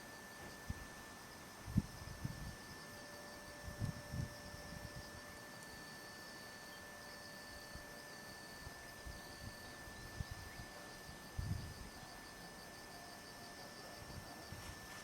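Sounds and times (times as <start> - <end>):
insects chirping in short trills: 0.1 - 15.0
wind rumble on microphone: 1.6 - 2.6, 3.6 - 5.1, 11.3 - 12.0.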